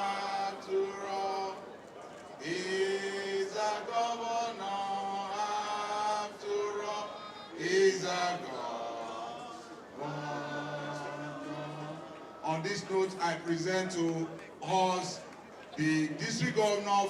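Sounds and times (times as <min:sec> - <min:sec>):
man singing chant-like tune: 0:02.4 - 0:15.2.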